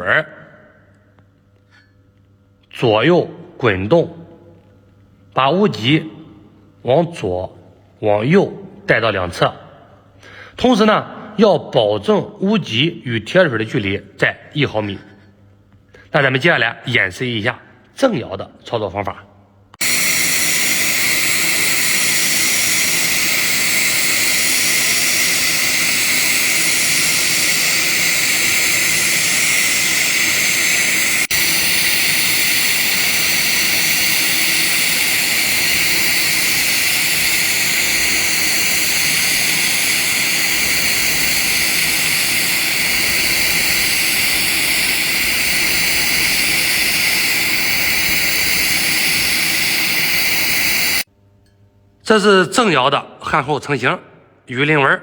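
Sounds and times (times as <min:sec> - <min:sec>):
welding arc hissing: 0:19.8 - 0:51.1.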